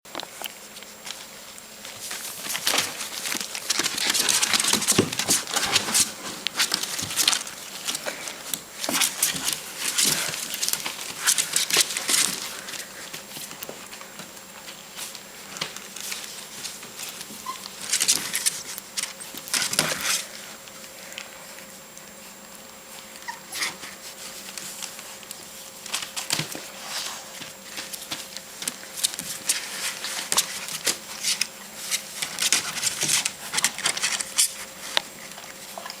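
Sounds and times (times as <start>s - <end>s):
puppy claws scratching and tapping: 27.4s - 36.0s.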